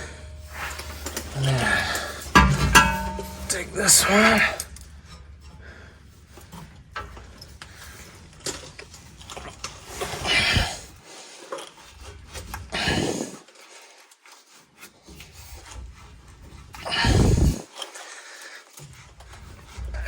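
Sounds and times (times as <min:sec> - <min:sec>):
handling noise: 0:00.0 - 0:04.7
metallic clinks: 0:00.0 - 0:04.9.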